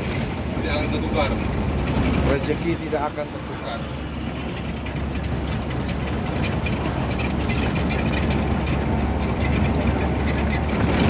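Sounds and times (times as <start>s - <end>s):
bus engine and road rumble: 0.0s - 11.0s
small rattles: 4.4s - 11.0s.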